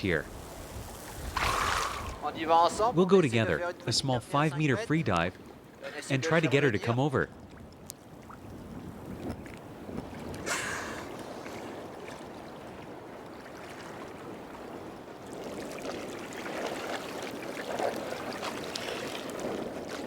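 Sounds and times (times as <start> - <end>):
water sloshing and splashing: 0.3 - 2.9, 7.3 - 20.0.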